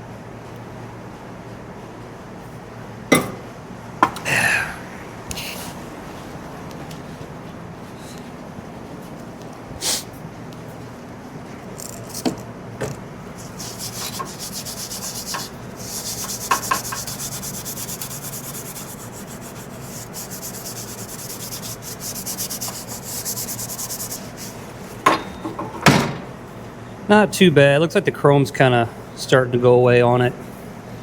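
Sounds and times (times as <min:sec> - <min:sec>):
steel wool scrubbing metal: 0:13.4 - 0:24.7.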